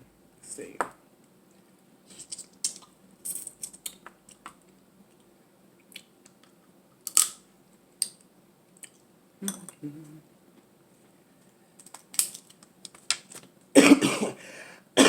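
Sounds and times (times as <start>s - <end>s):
crab shell cracking: 7.0s - 7.4s.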